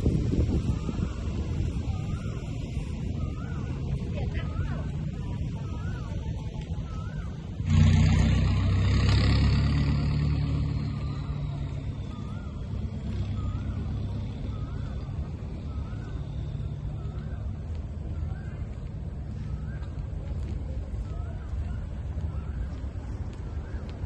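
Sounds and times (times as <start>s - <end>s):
vehicle passing by: 3.2s - 18.2s.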